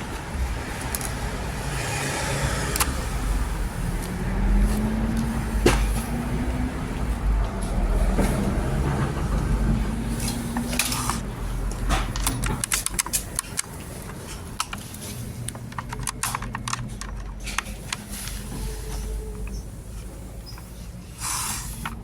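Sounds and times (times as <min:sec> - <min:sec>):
low engine-like rumble: 0:00.0 - 0:22.0
sharp clicks and knocks: 0:05.1 - 0:06.2, 0:07.0 - 0:19.7.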